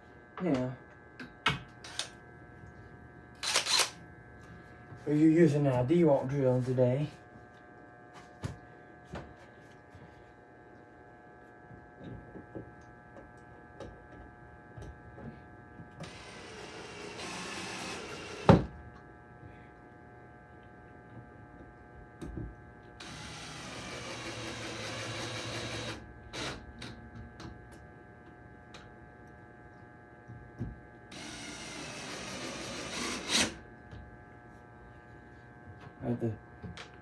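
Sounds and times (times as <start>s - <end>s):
cordless drill running: 3.4s - 4.0s, 16.0s - 18.6s, 23.0s - 26.6s, 31.1s - 33.6s.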